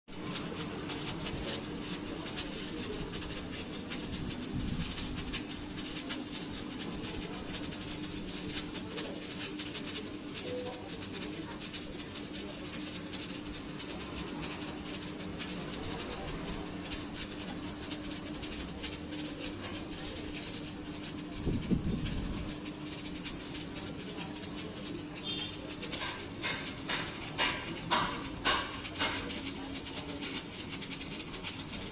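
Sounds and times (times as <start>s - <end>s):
welder humming: 0.1s - 31.9s
welding arc crackling: 0.1s - 31.9s.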